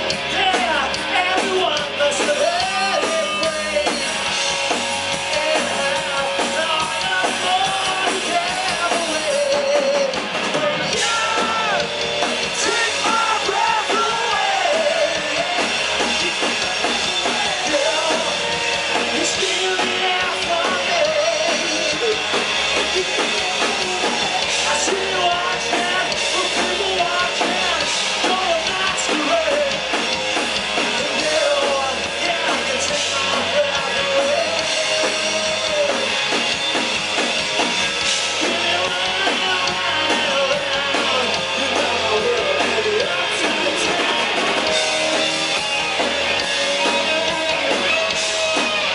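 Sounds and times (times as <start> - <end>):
rock band playing live: 0.0 - 48.9.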